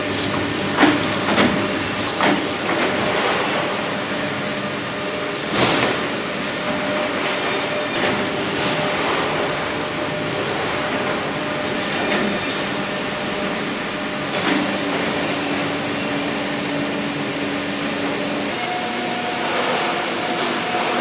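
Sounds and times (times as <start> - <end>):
woodworking machinery whirring: 14.6 - 21.0
steady hum: 18.5 - 21.0.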